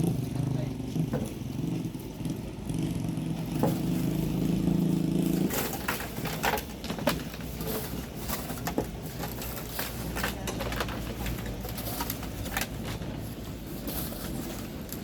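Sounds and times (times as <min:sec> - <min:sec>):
small engine running: 0:00.0 - 0:06.4.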